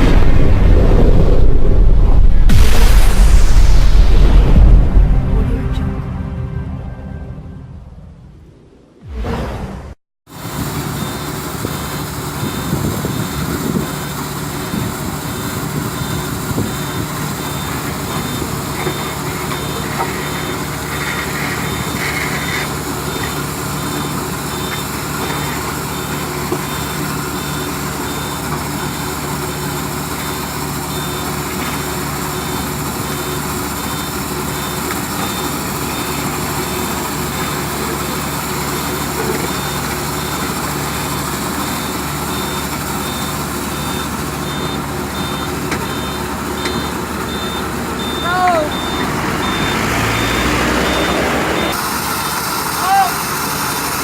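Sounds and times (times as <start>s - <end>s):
heavy diesel engines running: 10.3s - 54.0s
reversing alarm beeping: 10.8s - 14.0s, 14.6s - 52.0s.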